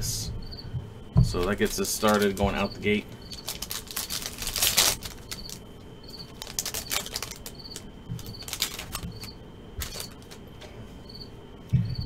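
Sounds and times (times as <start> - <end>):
cards rustling and clicking: 1.5 - 10.6
foil pack tearing: 1.8 - 2.7, 3.3 - 5.6, 6.2 - 10.4.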